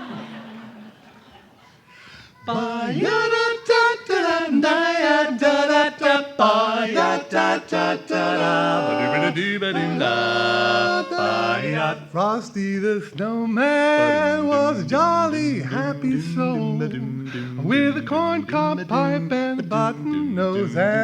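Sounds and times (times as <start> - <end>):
quartet singing a cappella: 2.4 - 21.0.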